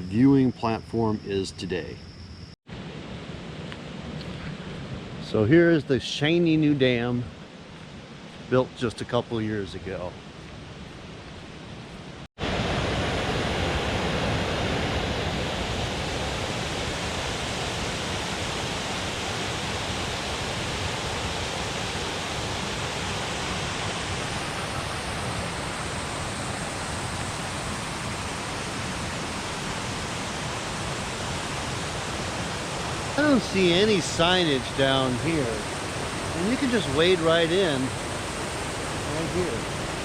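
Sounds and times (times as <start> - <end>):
water rushing over a spillway: 12.4 - 40.0.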